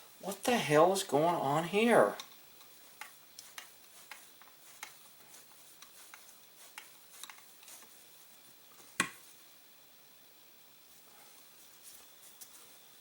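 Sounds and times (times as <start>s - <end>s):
small clicks and taps of handling: 5.8s - 7.8s.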